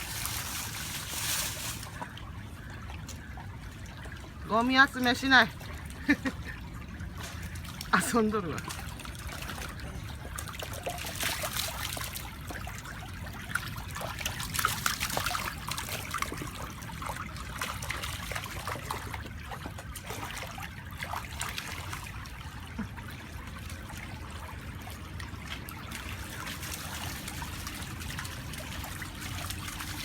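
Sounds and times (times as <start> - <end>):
brook trickling over stones: 0.0 - 30.0.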